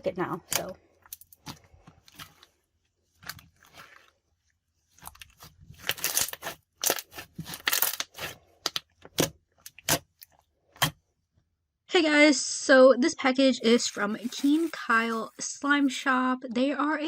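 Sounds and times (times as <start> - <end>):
slime squelching and crackling: 0.2 - 10.9, 13.6 - 16.1.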